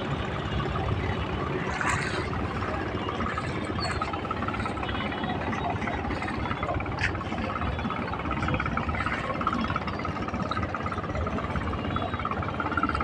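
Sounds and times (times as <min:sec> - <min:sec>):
small boat engine running: 0:00.0 - 0:13.0.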